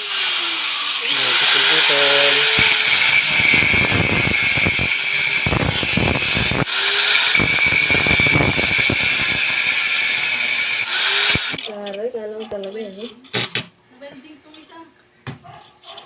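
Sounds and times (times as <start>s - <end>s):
angle grinder grinding steel: 0.0s - 11.8s.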